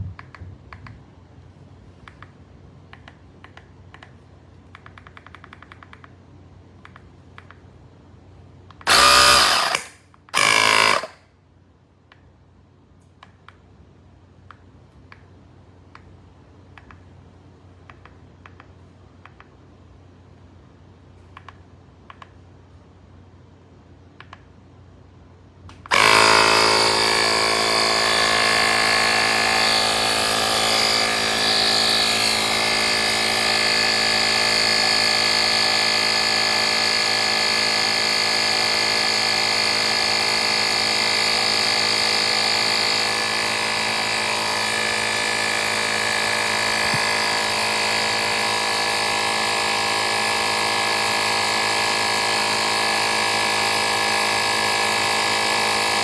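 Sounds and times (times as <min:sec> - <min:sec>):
tire inflator compressor buzzing: 0:08.9 - 0:11.2, 0:25.9 - 0:56.0.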